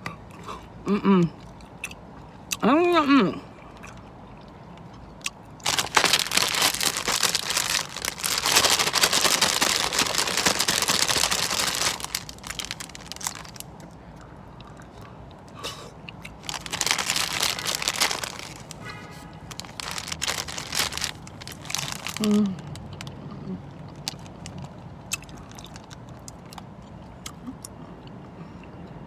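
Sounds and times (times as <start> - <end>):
gum wrapper crinkling: 5.3 - 14.0, 16.3 - 18.8, 19.4 - 23.1, 23.9 - 26.6.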